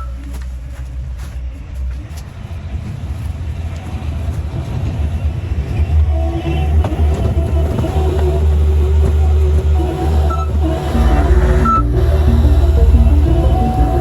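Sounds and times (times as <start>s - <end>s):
machine engine rumbling: 0.0s - 14.0s
music with held notes: 10.0s - 14.0s.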